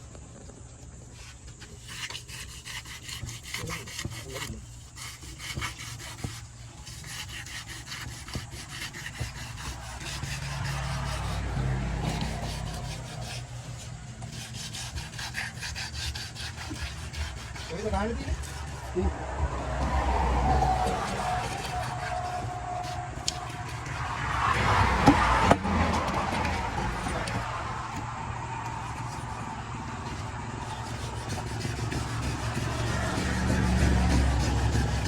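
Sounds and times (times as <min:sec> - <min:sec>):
knife scraping fish scales: 0:01.2 - 0:19.0, 0:20.8 - 0:24.2, 0:28.7 - 0:35.0.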